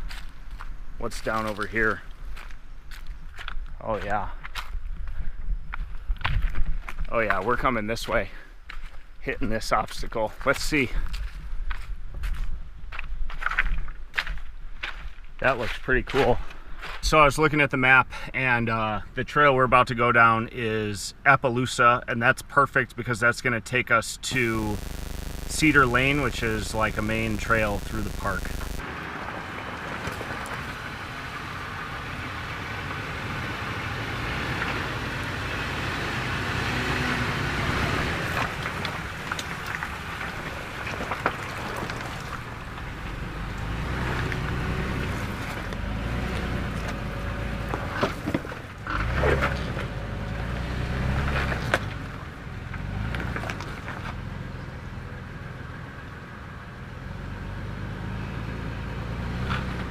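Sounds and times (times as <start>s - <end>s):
low engine rumble: 24.3s - 57.0s.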